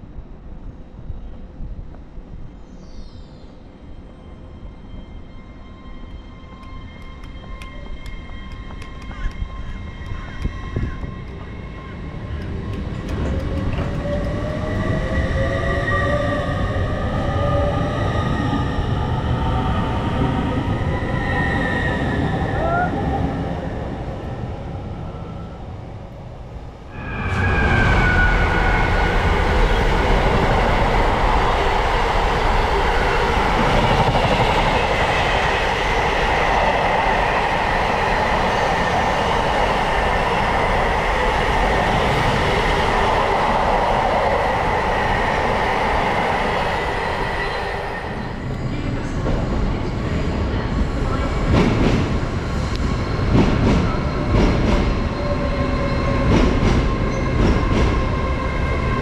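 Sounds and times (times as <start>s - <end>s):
steady train whine: 0.0s - 59.0s
train rail noise: 3.6s - 59.0s.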